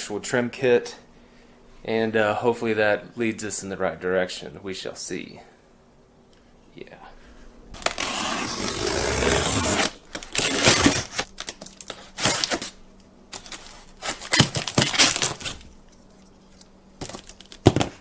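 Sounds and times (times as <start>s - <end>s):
cardboard packaging rustling: 7.8s - 18.0s.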